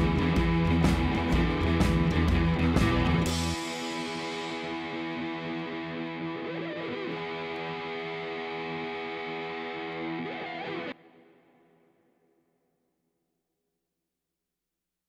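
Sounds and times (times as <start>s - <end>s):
distorted electric guitar chord: 0.0s - 11.9s.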